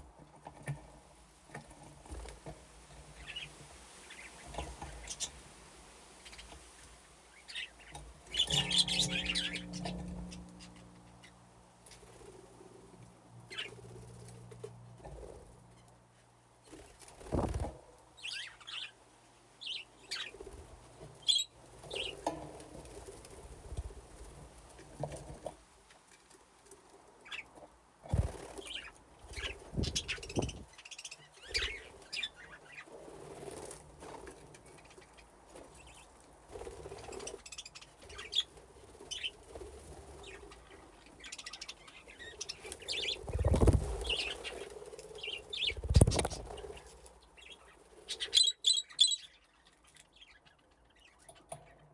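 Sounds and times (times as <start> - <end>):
wings fluttering: 6.2 - 16.0, 16.6 - 18.9, 19.6 - 25.6, 27.2 - 50.4
budgerigars chirping: 7.5 - 11.3, 21.2 - 22.2, 41.2 - 44.6, 45.2 - 46.8, 47.5 - 49.4
heavy wing flaps or thuds: 17.2 - 17.7, 43.2 - 44.2, 45.7 - 46.5.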